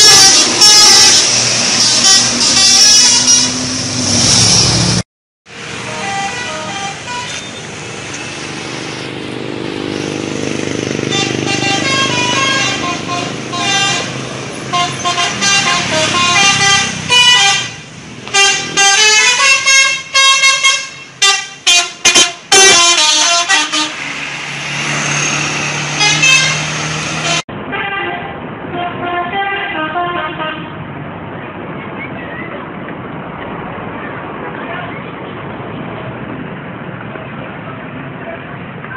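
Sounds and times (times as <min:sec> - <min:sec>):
musical air horn tunes: 0:00.0 - 0:05.0, 0:05.7 - 0:07.6, 0:11.0 - 0:24.2, 0:25.8 - 0:28.2.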